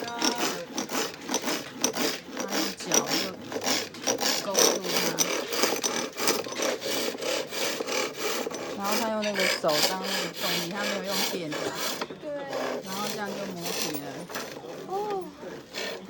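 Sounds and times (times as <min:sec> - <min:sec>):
chisel scraping spinning wood: 0:00.0 - 0:16.0.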